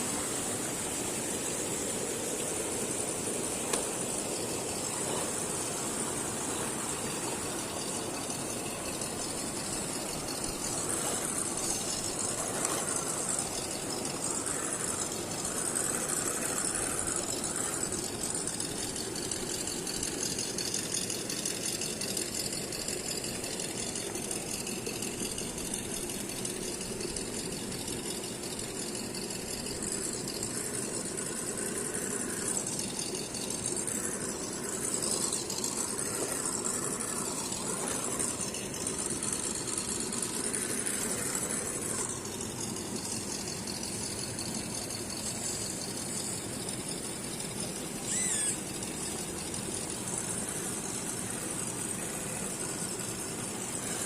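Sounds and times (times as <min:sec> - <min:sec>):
toy car electric motor whining: 0:00.0 - 0:54.0
gliding chirp: 0:48.0 - 0:49.2.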